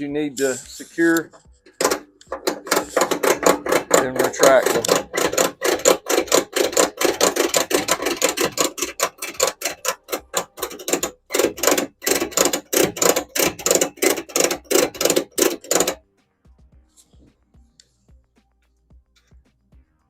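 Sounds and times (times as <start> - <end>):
ratchet strap clicking: 0.4 - 16.0.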